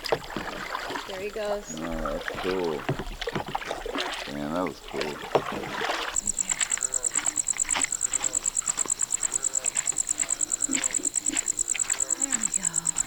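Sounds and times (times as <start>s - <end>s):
faint night calls: 0.0s - 13.0s
cricket-like insect trilling: 4.2s - 13.0s.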